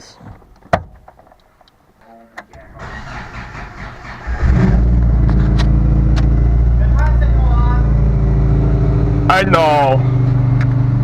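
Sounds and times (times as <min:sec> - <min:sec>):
starter cranking engine: 0:02.8 - 0:05.0
car engine running: 0:02.8 - 0:11.0.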